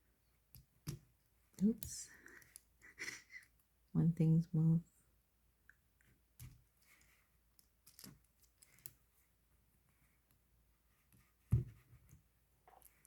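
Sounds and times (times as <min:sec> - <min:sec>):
plastic building blocks clicking: 0:06.4 - 0:08.9.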